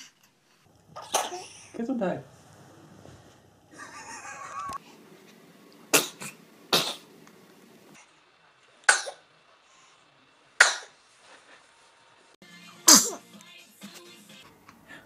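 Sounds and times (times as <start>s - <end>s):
baby sneezing: 10.6s - 11.0s, 12.8s - 13.2s.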